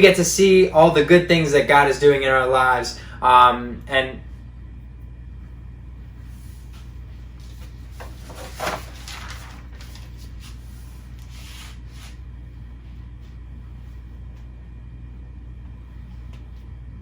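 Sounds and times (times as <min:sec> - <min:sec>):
low hum: 0:00.0 - 0:17.0
rustling: 0:06.4 - 0:12.2.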